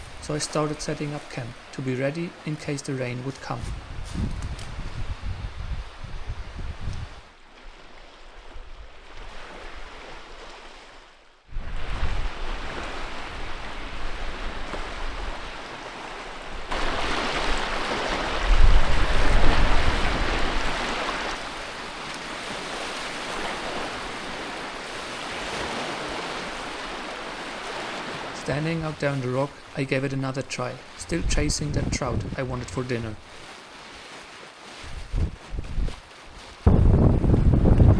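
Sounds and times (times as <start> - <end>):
strong wind: 0.0 - 0.8, 3.5 - 7.3, 11.5 - 15.6, 16.4 - 21.7, 31.0 - 32.9, 34.8 - 37.9
waves washing on shore: 0.0 - 37.9
wind rumbling on microphone: 3.5 - 7.4, 11.5 - 15.6, 16.4 - 21.8, 31.0 - 33.4, 34.8 - 37.9.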